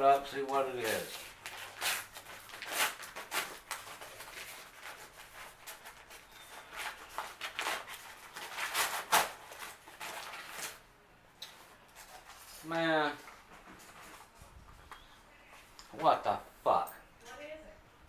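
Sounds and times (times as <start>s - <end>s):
packaging rustling and scraping: 0.2s - 10.9s, 11.5s - 14.4s.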